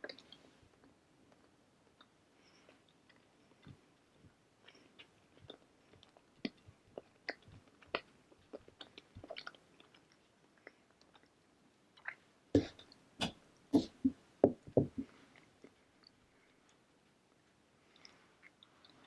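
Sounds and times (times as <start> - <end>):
chewing with wet mouth clicks: 4.6 - 12.2.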